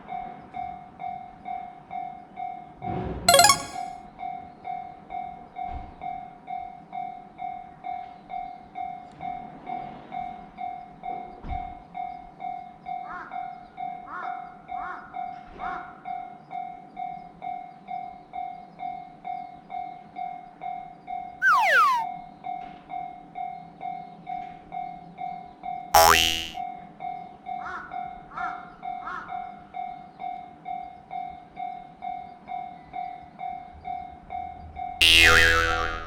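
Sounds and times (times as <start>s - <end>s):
short chirps: 3.3s - 3.9s, 21.4s - 22.0s.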